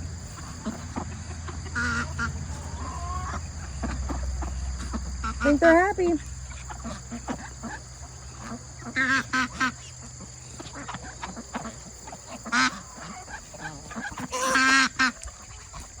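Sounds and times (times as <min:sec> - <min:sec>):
ducks quacking: 0:00.0 - 0:16.0.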